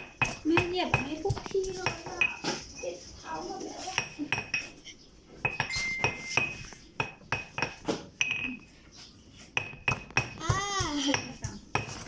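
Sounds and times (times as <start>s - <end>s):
pestle clinking in mortar: 0.0s - 2.4s, 5.4s - 8.7s, 9.6s - 12.0s.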